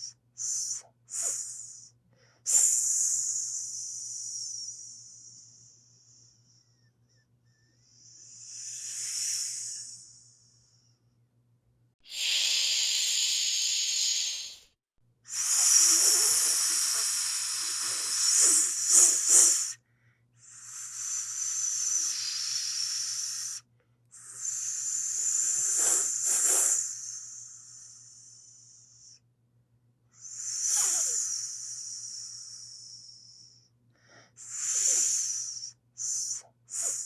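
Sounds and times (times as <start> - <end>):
snake hissing: 0.4 - 1.9, 7.9 - 10.4, 12.0 - 19.8, 20.6 - 23.6, 24.3 - 28.4, 30.3 - 33.5, 34.4 - 37.0.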